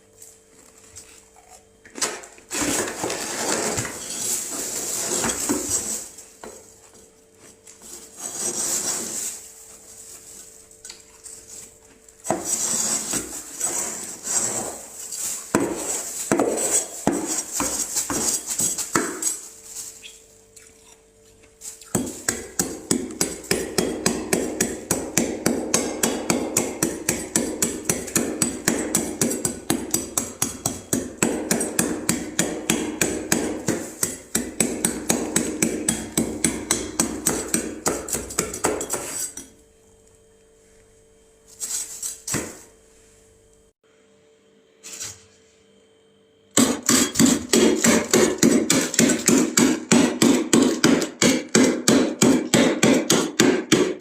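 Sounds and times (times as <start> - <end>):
frost scraping in freezer: 2.5 - 22.8, 41.5 - 42.8.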